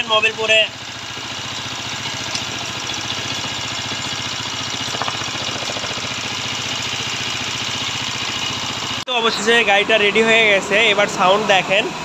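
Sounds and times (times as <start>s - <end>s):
motorcycle engine idling: 0.0s - 9.0s.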